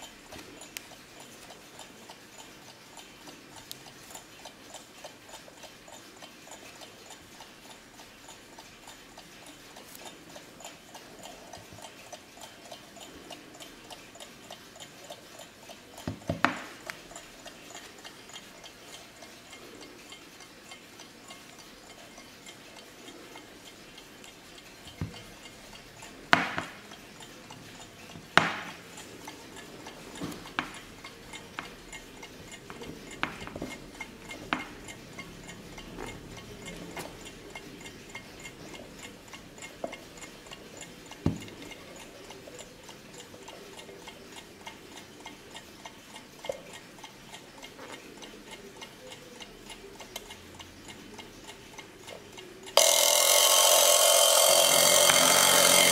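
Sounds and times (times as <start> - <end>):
alarm clock ticking: 0.0 - 55.9
irregular clicks and knocks: 16.0 - 17.9, 26.3 - 26.9, 28.1 - 29.0, 32.5 - 35.0, 52.8 - 55.9.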